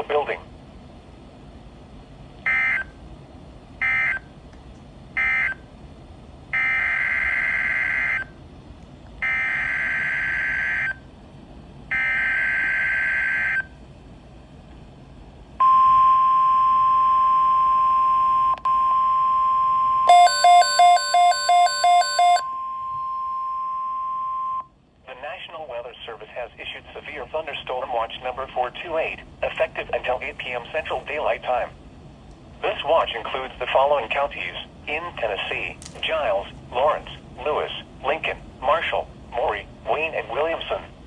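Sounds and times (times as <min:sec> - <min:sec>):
steady radio alarm tone: 0:02.5 - 0:03.0, 0:03.8 - 0:04.3, 0:05.2 - 0:05.6, 0:06.5 - 0:08.4, 0:09.2 - 0:11.0, 0:11.9 - 0:13.7, 0:15.6 - 0:24.7
rapid beeping: 0:20.1 - 0:22.5.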